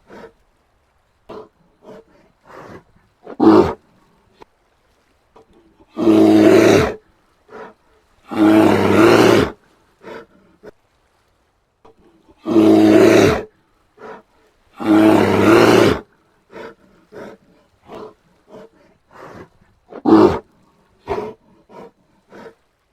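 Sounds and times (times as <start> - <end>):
bear roaring: 0.0 - 0.4, 1.3 - 3.8, 5.8 - 10.3, 12.4 - 14.2, 14.8 - 22.6.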